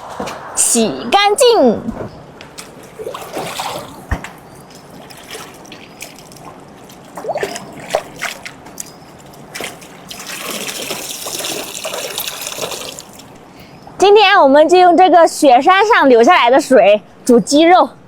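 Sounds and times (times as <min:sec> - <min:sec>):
water splashing and trickling: 0:02.6 - 0:13.4
pouring water: 0:09.5 - 0:13.4.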